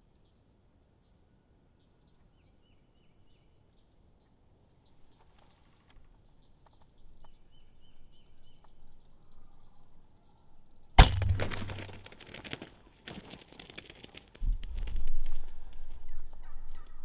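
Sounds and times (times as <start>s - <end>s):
bird thrashing in brush: 11.0s - 12.7s.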